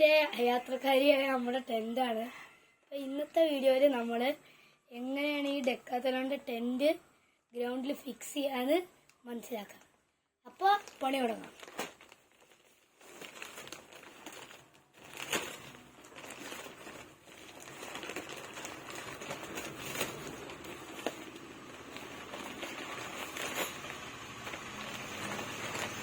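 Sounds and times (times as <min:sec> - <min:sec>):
tent fabric rustling: 0:10.6 - 0:26.0.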